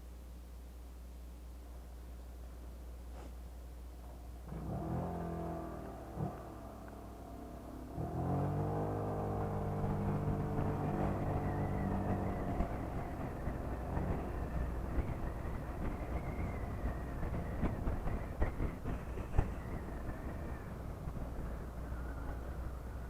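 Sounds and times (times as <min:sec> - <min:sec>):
scooter engine revving and running: 0:04.5 - 0:23.0.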